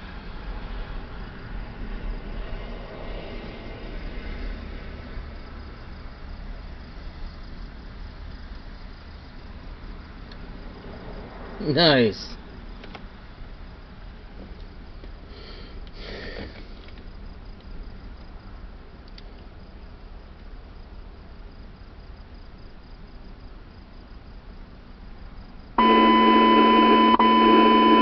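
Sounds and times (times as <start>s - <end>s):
loud steady alert tone: 25.8s - 28.0s.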